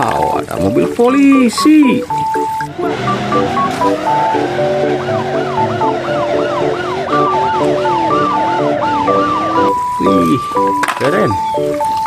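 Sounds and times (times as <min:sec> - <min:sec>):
background music: 0:00.0 - 0:12.0
police siren yelping: 0:02.0 - 0:10.8.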